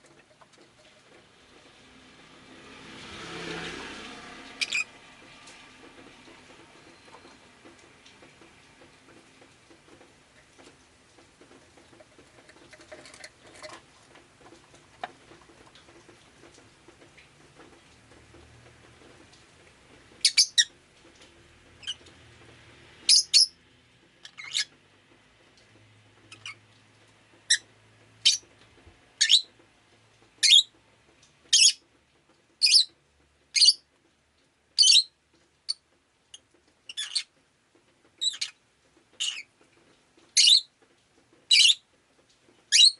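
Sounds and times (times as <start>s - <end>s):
lovebird chirping: 4.6s - 4.9s, 20.2s - 20.7s, 23.1s - 23.6s, 32.6s - 32.9s.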